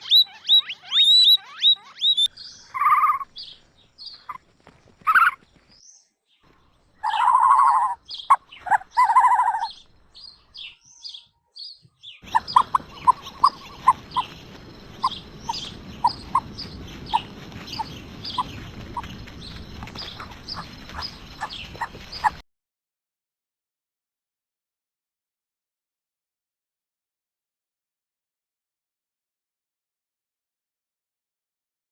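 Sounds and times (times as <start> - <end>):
bird drawn-out call: 0.0 - 3.3, 7.0 - 9.8, 12.2 - 22.4
birds chirping: 0.0 - 22.4.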